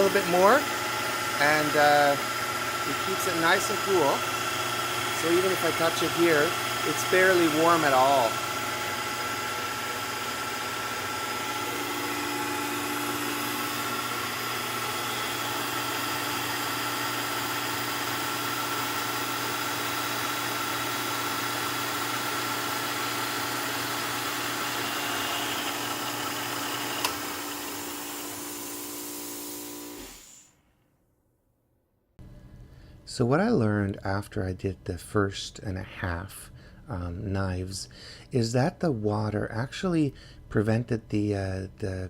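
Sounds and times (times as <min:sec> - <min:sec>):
lathe running with grinding stone: 0:00.0 - 0:30.4.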